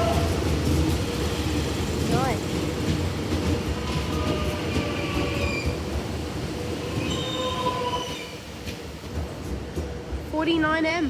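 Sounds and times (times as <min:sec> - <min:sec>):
low rolling train rumble: 0:00.0 - 0:11.0
train wheels squealing: 0:03.7 - 0:08.8.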